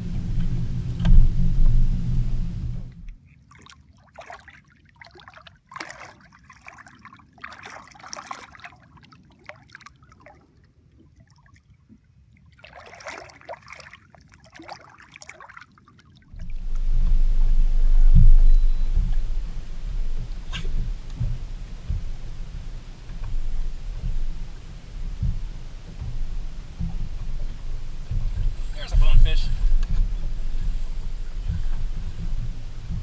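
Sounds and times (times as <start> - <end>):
loud low rumble: 0.0 - 3.2, 16.3 - 33.0
water splashing and trickling: 2.8 - 33.0.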